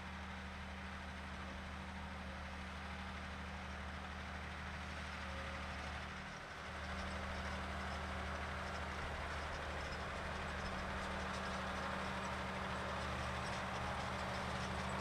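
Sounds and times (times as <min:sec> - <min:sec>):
tractor diesel engine under load: 0:06.0 - 0:15.0.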